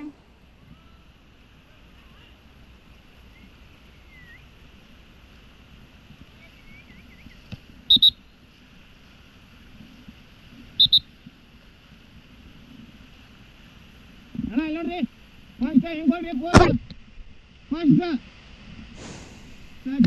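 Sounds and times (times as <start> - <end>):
faint bird chirps: 3.2 - 4.6, 6.4 - 8.3
sharp high-pitched calls: 7.9 - 8.2.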